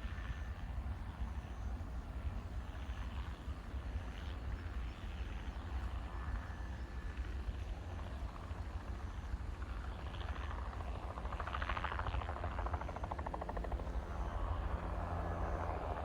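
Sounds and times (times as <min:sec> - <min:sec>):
helicopter rotor chop: 0:09.4 - 0:16.0.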